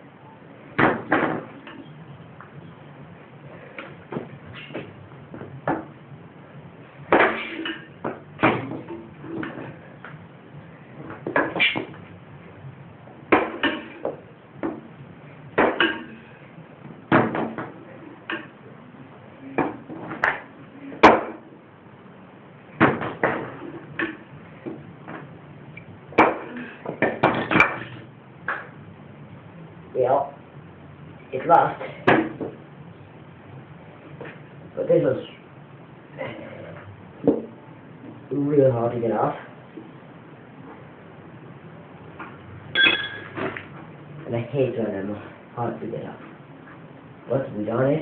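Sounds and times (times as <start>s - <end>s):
metal tools knocking and clanking: 42.8s - 43.4s.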